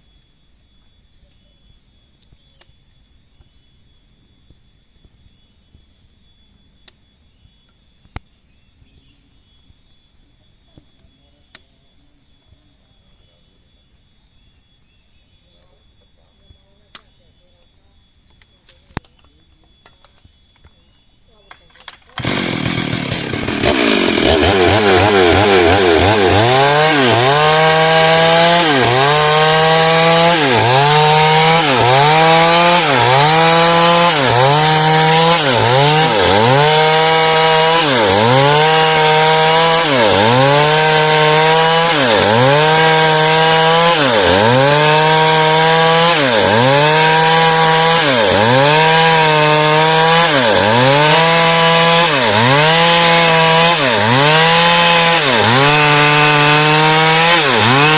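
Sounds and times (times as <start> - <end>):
chainsaw sawing through timber: 22.2 - 57.9.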